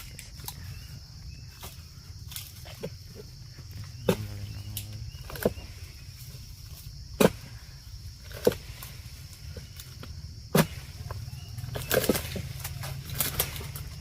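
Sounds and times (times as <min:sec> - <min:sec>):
steady high buzz: 0:03.6 - 0:06.6.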